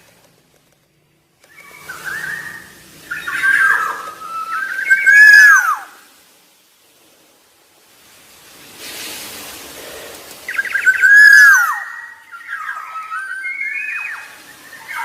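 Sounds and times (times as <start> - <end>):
soft hiss: 0.0 - 15.0
bird calling: 1.4 - 6.1, 9.8 - 15.0.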